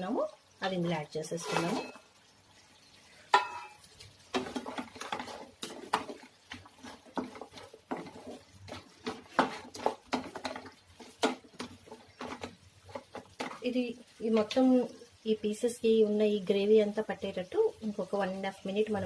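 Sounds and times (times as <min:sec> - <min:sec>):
spoon scraping a frying pan: 0:01.3 - 0:02.3, 0:03.1 - 0:15.1.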